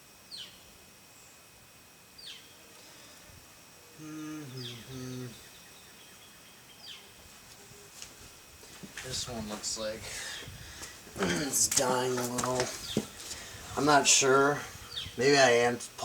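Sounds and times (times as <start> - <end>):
bird chirping: 0.3 - 1.4, 2.2 - 2.6, 4.4 - 7.2, 14.8 - 15.2
low voice-like hum: 2.6 - 5.6.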